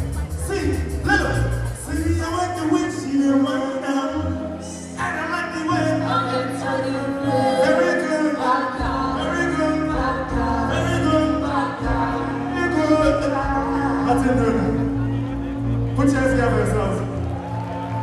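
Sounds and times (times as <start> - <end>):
pop band with deep bass: 0.0 - 18.0
person singing: 1.0 - 15.0.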